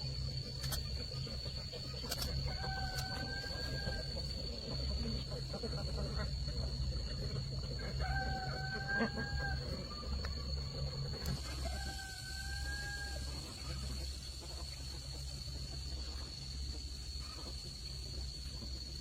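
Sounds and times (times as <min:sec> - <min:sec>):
rooster crowing: 0:02.3 - 0:04.6, 0:07.6 - 0:13.8.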